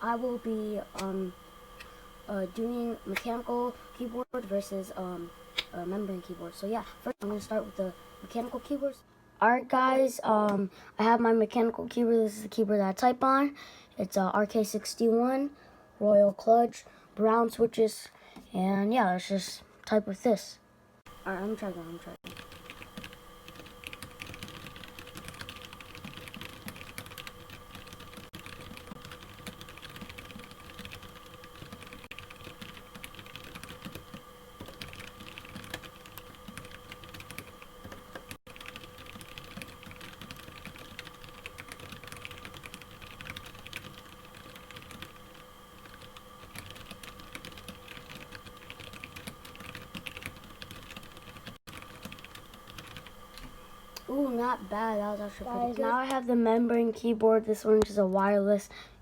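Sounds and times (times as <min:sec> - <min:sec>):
mechanical keyboard typing: 0:22.2 - 0:53.1.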